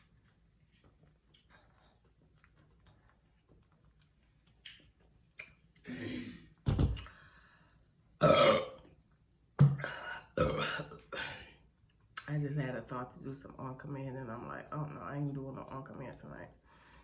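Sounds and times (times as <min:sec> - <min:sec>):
woman burping loudly: 0:08.2 - 0:08.9, 0:09.6 - 0:11.5.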